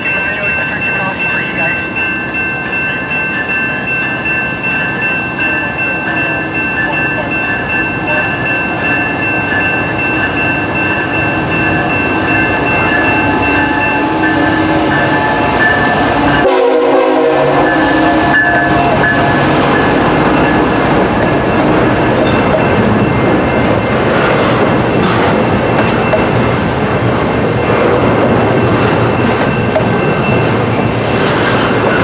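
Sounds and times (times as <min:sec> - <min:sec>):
train rumbling past: 0:00.0 - 0:32.0
train horn chord: 0:13.2 - 0:21.8
wheels clacking over rails: 0:18.3 - 0:32.0.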